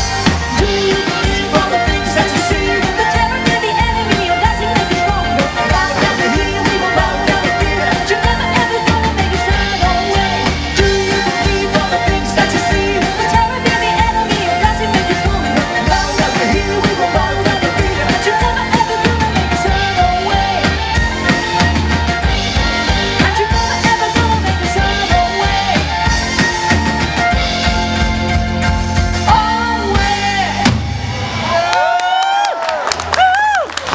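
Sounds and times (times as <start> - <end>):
person singing: 0.0 - 22.0, 22.6 - 27.0, 29.2 - 30.7
live rock band playing: 0.0 - 32.0
people whooping: 31.2 - 33.9.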